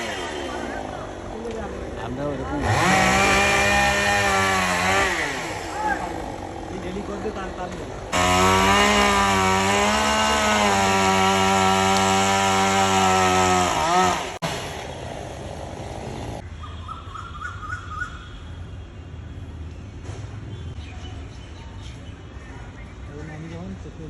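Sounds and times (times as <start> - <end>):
chainsaw cutting at full throttle: 0.0 - 1.0, 2.4 - 7.4, 8.1 - 16.4.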